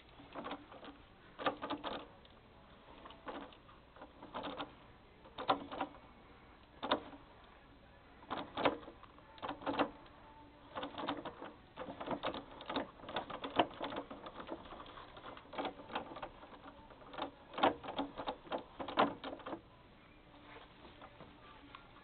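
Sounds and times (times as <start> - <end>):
gearbox knocking: 0.2 - 2.1, 3.0 - 4.7, 5.3 - 6.0, 6.8 - 7.3, 8.2 - 10.0, 10.7 - 19.6.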